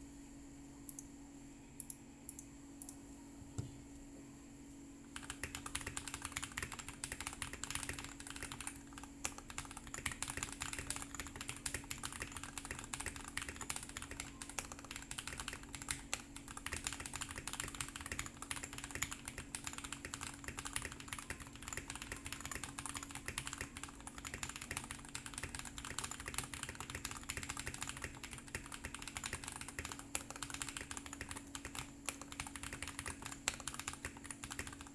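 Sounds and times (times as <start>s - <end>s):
mechanical keyboard typing: 5.2s - 34.9s.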